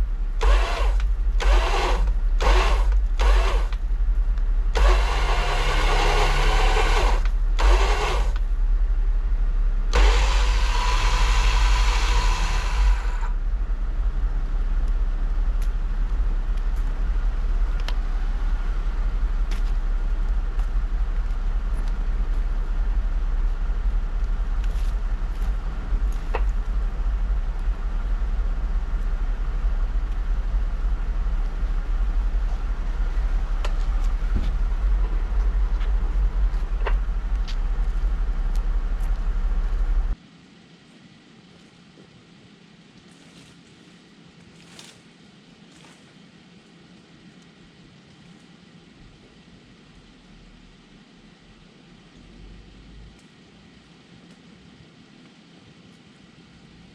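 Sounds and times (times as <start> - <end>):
engine rumbling: 0.0 - 40.8, 41.5 - 56.9
loud hissing: 9.8 - 20.1.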